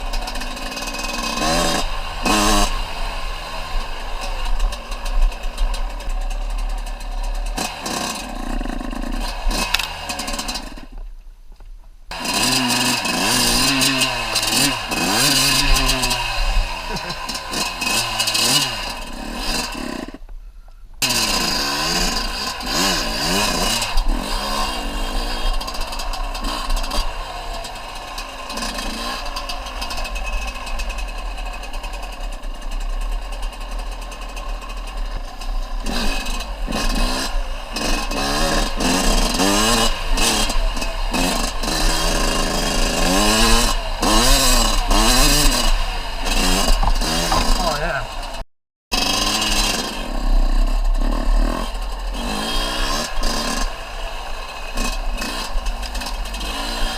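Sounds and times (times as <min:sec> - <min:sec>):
off-road vehicle engine revving: 0:00.0 - 0:11.0, 0:12.1 - 0:20.2, 0:21.0 - 0:56.9.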